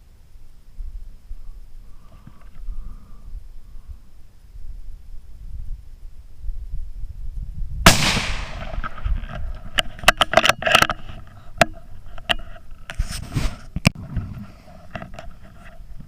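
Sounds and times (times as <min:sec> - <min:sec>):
rifle shot: 0:07.8 - 0:09.0
sharp clicks and crackles: 0:08.1 - 0:13.0.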